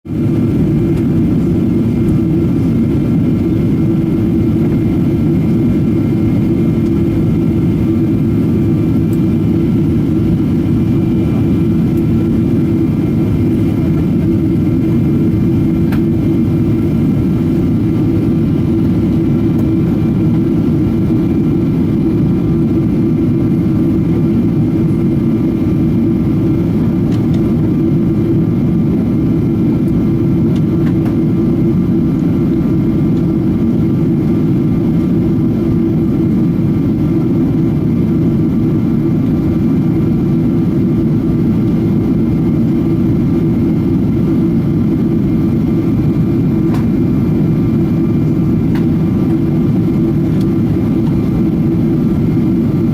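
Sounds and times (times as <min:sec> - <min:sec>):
jet engine drone in cabin: 0:00.1 - 0:52.9.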